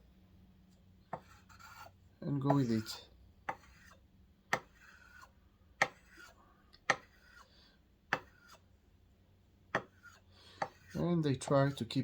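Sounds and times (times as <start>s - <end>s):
blade scraping on abrasive paper: 1.2s - 4.0s, 4.6s - 7.6s, 8.2s - 8.7s, 9.8s - 12.0s.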